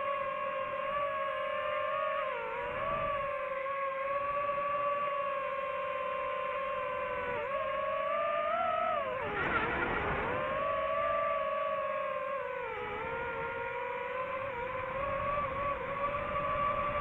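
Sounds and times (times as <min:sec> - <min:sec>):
drone propellers whining: 0:00.0 - 0:17.0.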